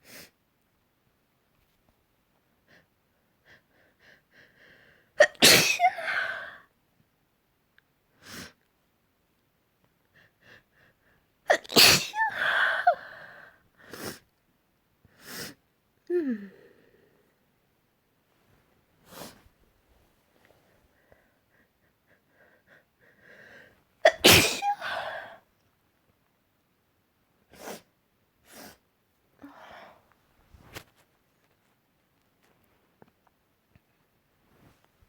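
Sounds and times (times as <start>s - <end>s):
person sneezing: 5.2s - 6.6s, 11.5s - 13.3s, 24.0s - 25.4s
sniffs: 13.8s - 14.3s, 19.0s - 19.6s, 27.5s - 28.8s.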